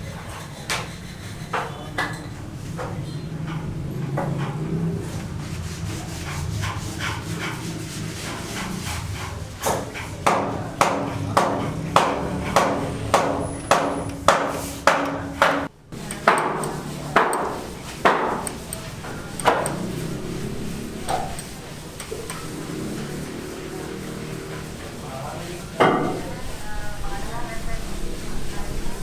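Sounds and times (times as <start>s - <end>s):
hammer blows ringing: 10.2s - 20.3s.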